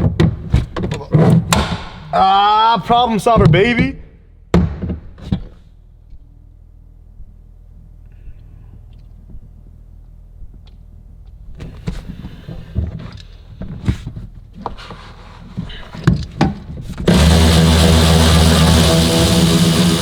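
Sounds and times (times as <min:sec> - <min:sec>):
cordless power tool running: 0:17.1 - 0:20.0.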